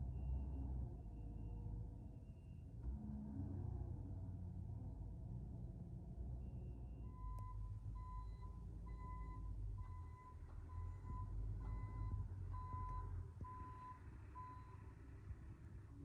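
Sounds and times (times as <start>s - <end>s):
low engine rumble: 0.0s - 16.0s
backup alarm beeping: 7.1s - 14.9s.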